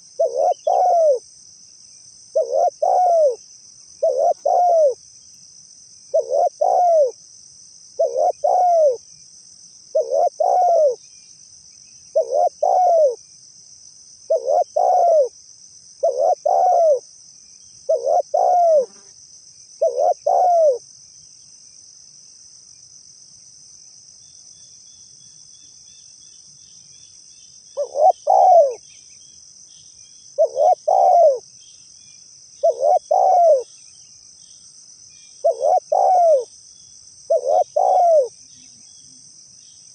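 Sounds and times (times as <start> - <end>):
dove cooing: 0.0 - 1.2, 2.3 - 3.4, 4.0 - 5.0, 6.1 - 7.2, 8.0 - 9.0, 9.9 - 11.0, 12.1 - 13.2, 14.3 - 15.4, 16.0 - 17.0, 17.9 - 19.0, 19.8 - 20.8, 27.8 - 28.8, 30.4 - 31.4, 32.6 - 33.7, 35.4 - 36.5, 37.3 - 38.4
small birds chirping: 0.0 - 7.2, 8.0 - 13.4, 16.0 - 19.1, 19.8 - 21.5, 23.8 - 39.9
high insect drone: 0.0 - 39.9.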